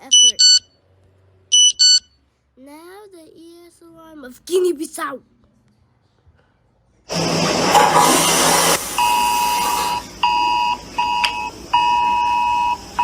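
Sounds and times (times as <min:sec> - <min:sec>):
electronic alarm beeps: 0:00.0 - 0:00.8, 0:01.5 - 0:02.2, 0:09.0 - 0:13.0.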